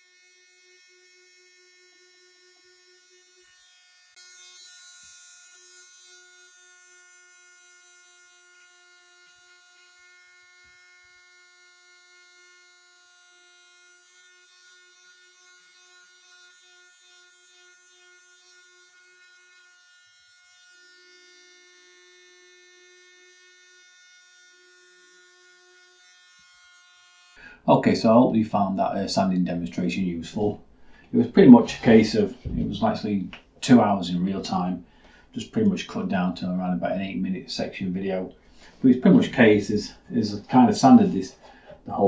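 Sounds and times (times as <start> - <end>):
electric power sander buzzing: 0.0 - 27.4.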